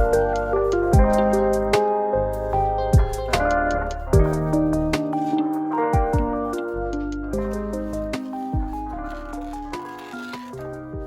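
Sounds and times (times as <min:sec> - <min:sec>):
background music with held notes: 0:00.0 - 0:11.0
deep drum hit: 0:01.0 - 0:01.3, 0:04.1 - 0:04.6.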